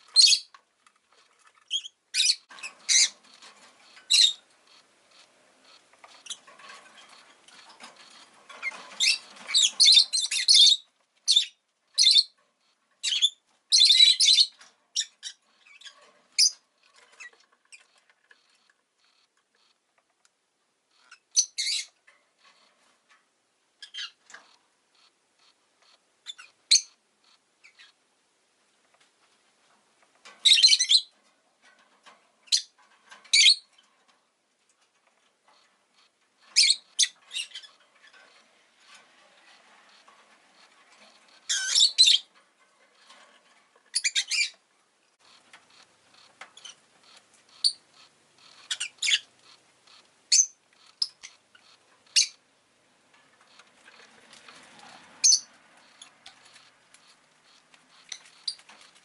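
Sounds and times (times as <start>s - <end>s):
lovebird chirping: 0.1s - 0.5s, 1.6s - 3.4s, 4.0s - 4.8s, 5.7s - 6.5s, 8.1s - 12.4s, 13.0s - 16.6s, 21.0s - 22.0s, 23.8s - 24.2s, 26.2s - 27.0s, 30.4s - 31.1s, 33.3s - 33.7s, 36.6s - 37.8s, 41.4s - 42.3s, 43.9s - 44.6s, 47.5s - 49.3s, 50.3s - 52.4s, 54.9s - 56.1s.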